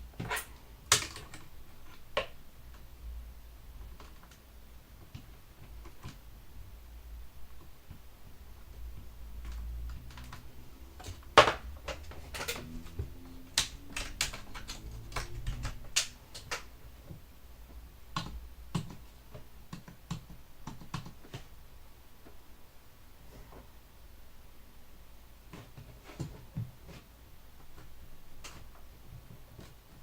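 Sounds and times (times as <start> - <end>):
keyboard keys clicking: 9.0 - 17.0, 18.1 - 21.5.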